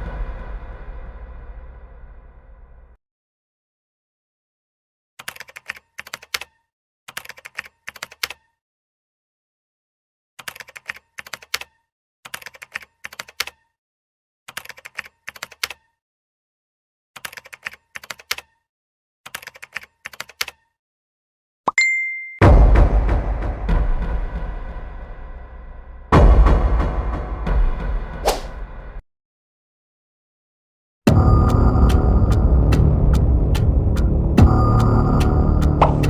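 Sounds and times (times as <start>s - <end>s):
rapid keyboard key clicks: 5.2s - 8.6s, 10.4s - 13.7s, 14.5s - 15.9s, 17.2s - 18.6s, 19.3s - 20.7s.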